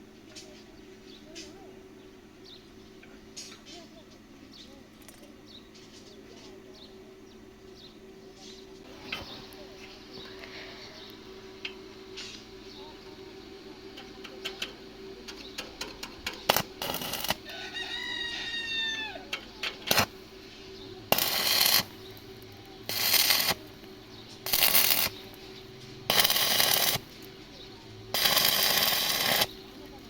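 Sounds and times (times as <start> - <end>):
arc welder crackling: 8.8 - 30.0
rooster crowing: 17.0 - 19.4.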